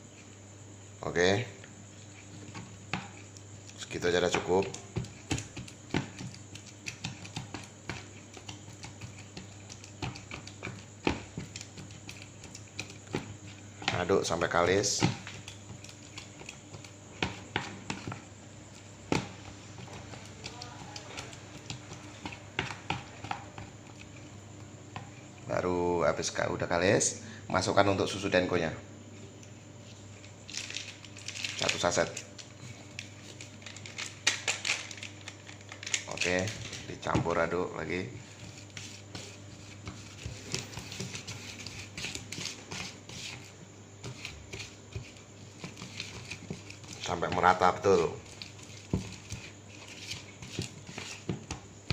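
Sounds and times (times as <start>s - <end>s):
steady low hum: 0.0s - 51.9s
utensil scraping against bowl: 1.9s - 24.3s, 37.9s - 51.6s
wet dough squelching and scraping: 35.8s - 51.9s.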